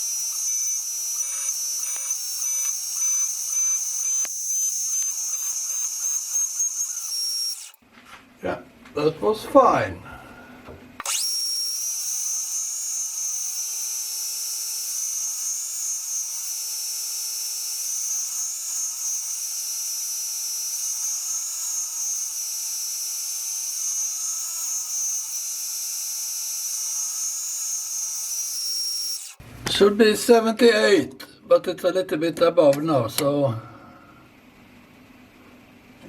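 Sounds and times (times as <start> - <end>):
metal lathe whining: 0.0 - 7.8, 11.0 - 29.4.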